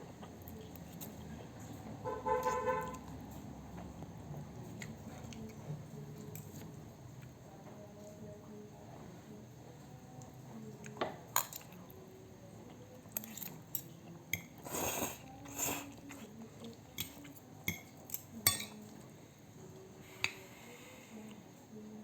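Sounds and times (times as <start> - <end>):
cutlery clinking on a plate: 17.0 - 18.8.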